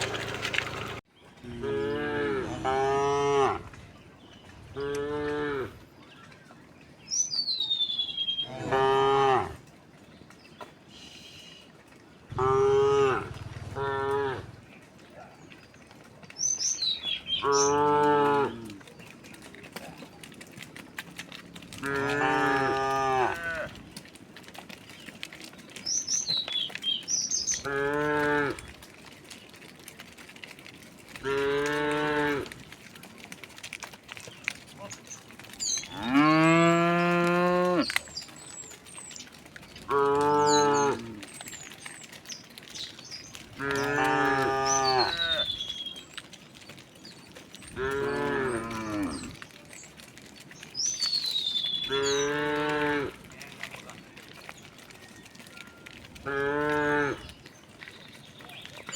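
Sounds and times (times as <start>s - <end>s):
cattle mooing: 0.0s - 3.7s, 4.7s - 5.8s, 8.4s - 9.6s, 12.3s - 14.6s, 17.4s - 18.9s, 21.7s - 23.8s, 27.5s - 28.7s, 31.1s - 32.6s, 35.8s - 38.0s, 39.8s - 41.5s, 43.5s - 45.5s, 47.7s - 49.4s, 51.8s - 53.4s, 56.2s - 57.3s.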